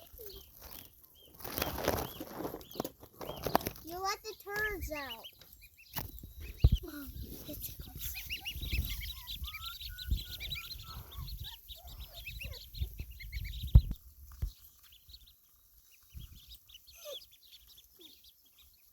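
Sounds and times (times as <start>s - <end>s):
ducklings peeping: 0.0s - 18.9s.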